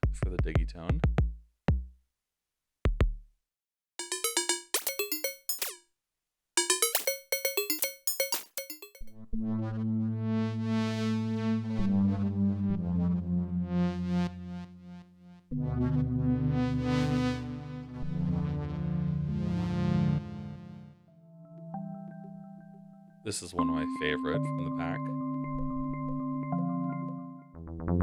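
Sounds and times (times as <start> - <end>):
synthesizer kick: 4.0 - 5.8, 6.6 - 9.1.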